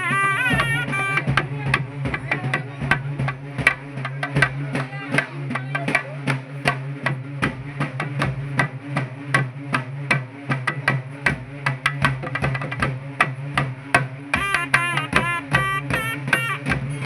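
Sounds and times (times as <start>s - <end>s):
drums beating fast rhythm: 0.0s - 6.8s, 11.2s - 17.0s.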